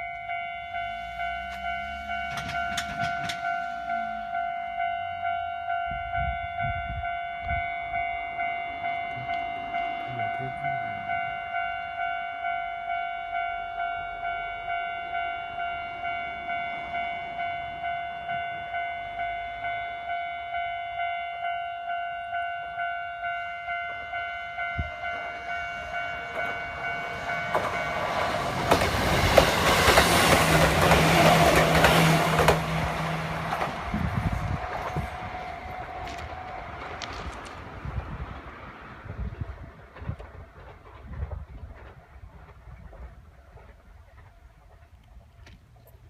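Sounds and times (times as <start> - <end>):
level crossing bell ringing: 0.0 - 28.5
train wheels clattering: 1.3 - 4.0, 26.3 - 45.1.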